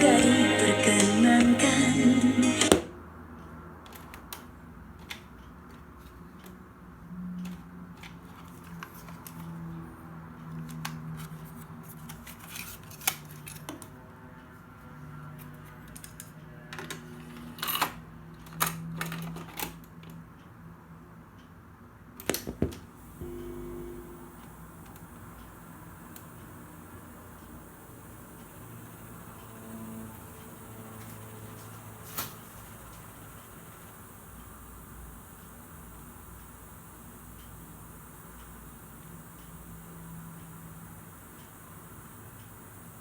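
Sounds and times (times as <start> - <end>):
faint low hum: 23.2 - 26.3.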